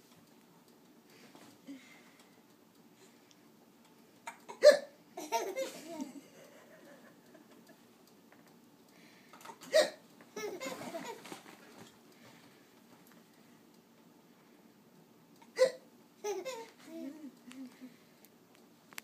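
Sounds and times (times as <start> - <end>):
child hiccuping: 4.3 - 5.0, 9.6 - 10.0, 15.5 - 15.9
child laughing: 4.6 - 7.7, 9.7 - 11.4, 15.6 - 18.0.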